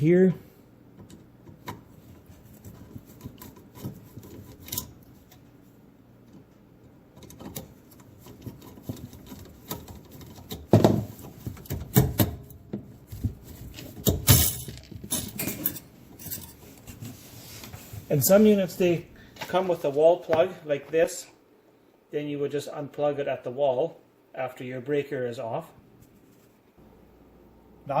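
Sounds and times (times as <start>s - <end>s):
wire pulled from junction box: 1.6s - 5.5s
clicks and knocks of hand work: 6.2s - 17.8s.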